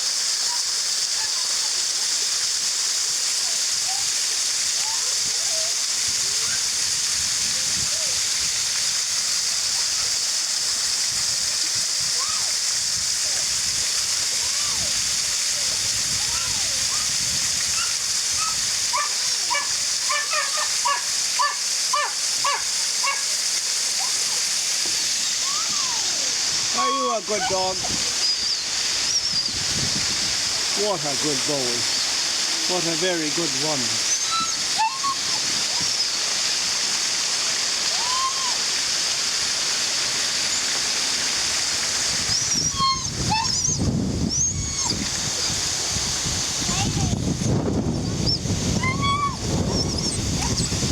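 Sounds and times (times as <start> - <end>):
waterfall rushing: 0.0 - 50.9
dog high sliding cries: 0.4 - 1.9, 3.4 - 6.7, 12.1 - 12.6, 14.3 - 29.6, 34.0 - 36.7, 37.8 - 39.1, 42.2 - 45.6, 46.6 - 47.2, 48.0 - 50.9
dog whimpering: 25.2 - 29.5, 34.0 - 36.2, 37.9 - 38.6, 42.3 - 45.6, 48.3 - 50.8.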